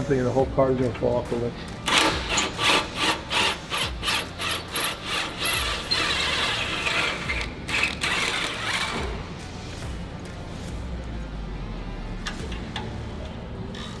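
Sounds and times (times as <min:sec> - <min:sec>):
ratchet wrench clicking: 0:01.8 - 0:09.1.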